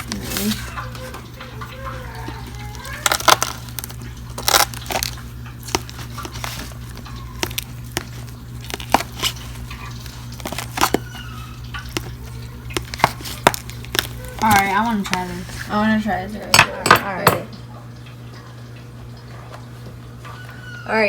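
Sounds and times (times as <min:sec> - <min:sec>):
crisp fried batter crunching: 0:00.0 - 0:16.4.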